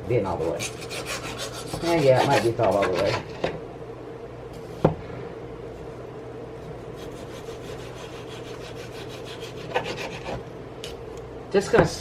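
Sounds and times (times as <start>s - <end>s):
steady low hum: 0.0s - 12.0s
knife sawing through meat: 0.4s - 3.2s, 6.9s - 10.4s.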